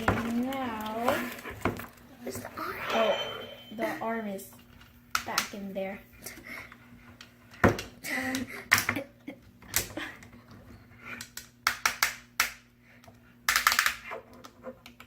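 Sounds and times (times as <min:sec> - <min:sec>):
plastic parts clicking and tapping: 0:11.1 - 0:15.0.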